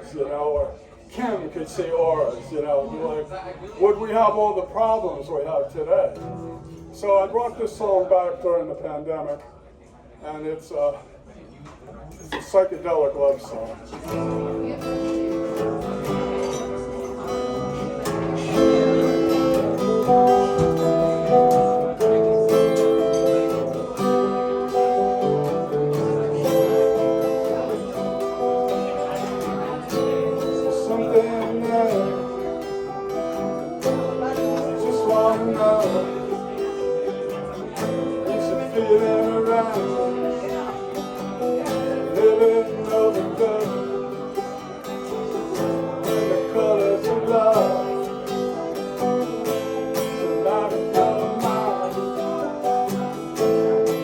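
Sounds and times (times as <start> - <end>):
acoustic guitar strumming: 3.8 - 9.3, 12.4 - 54.0.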